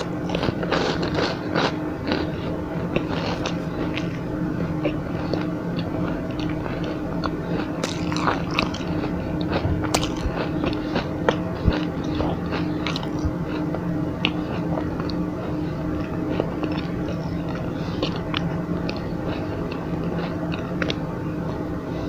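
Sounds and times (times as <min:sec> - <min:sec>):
person chewing crunchy snack: 0:00.0 - 0:21.0
steady low hum: 0:00.0 - 0:22.0.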